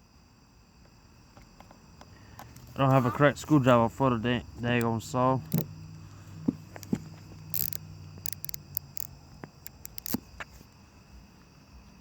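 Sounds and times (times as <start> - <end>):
screwdriver clicks and scrapes: 6.8 - 10.3.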